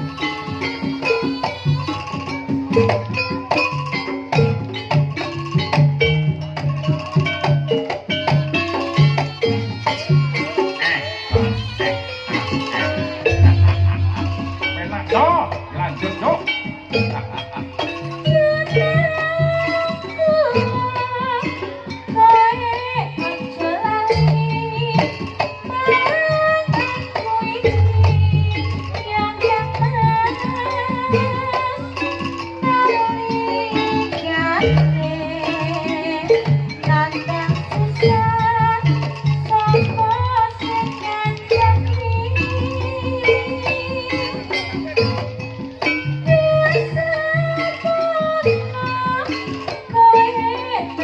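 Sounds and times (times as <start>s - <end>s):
drum strokes: 0.0s - 21.4s, 22.2s - 32.9s, 34.2s - 50.6s
gamelan metal percussion: 0.0s - 51.0s
wavering sliding lead melody: 9.6s - 18.6s, 39.9s - 48.4s.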